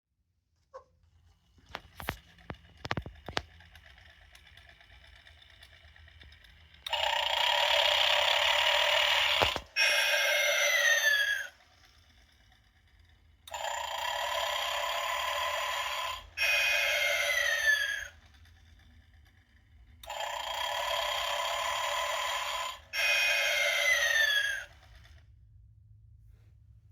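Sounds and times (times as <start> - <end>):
toy snoring: 6.8 - 25.2.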